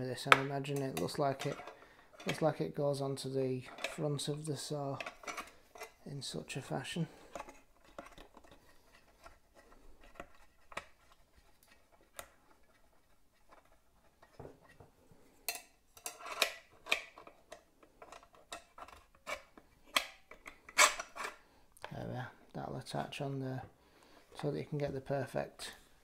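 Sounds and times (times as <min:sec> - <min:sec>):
saw attachment clicking and clacking: 0:00.2 - 0:02.5.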